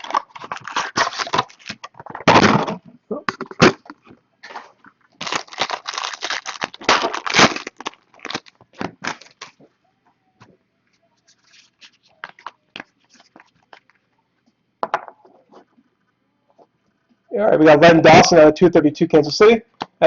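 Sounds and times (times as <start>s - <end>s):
wrapping torn and crumpled: 0.0s - 1.9s, 4.4s - 9.6s, 11.3s - 14.0s.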